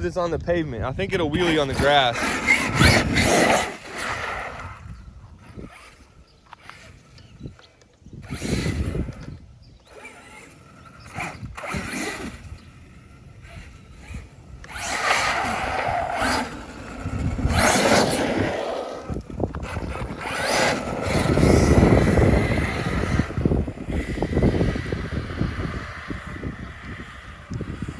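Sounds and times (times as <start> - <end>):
electric toy truck motor whirring: 1.1 - 27.9
tires rushing on pavement: 1.2 - 4.9, 14.3 - 27.9.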